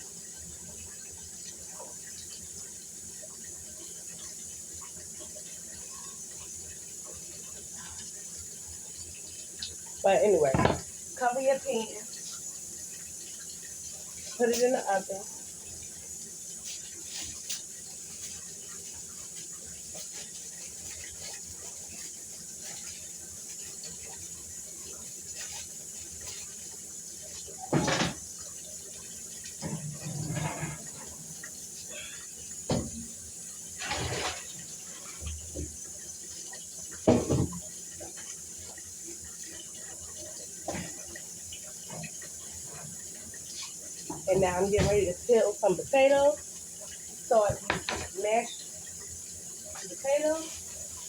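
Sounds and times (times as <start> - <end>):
cookware and utensils clattering: 10.0 - 11.0, 27.5 - 28.3, 29.5 - 31.4, 33.8 - 35.4, 37.1 - 37.6, 47.3 - 48.6.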